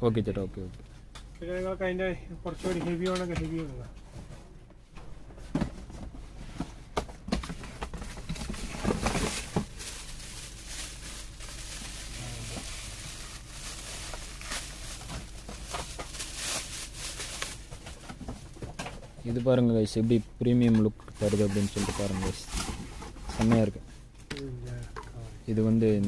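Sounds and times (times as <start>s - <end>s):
packaging rustling: 7.2s - 18.5s.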